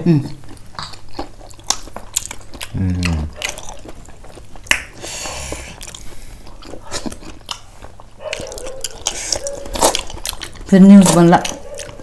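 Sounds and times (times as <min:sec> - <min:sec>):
chewing and biting: 0:00.3 - 0:12.0
wet mouth clicks: 0:04.6 - 0:06.1.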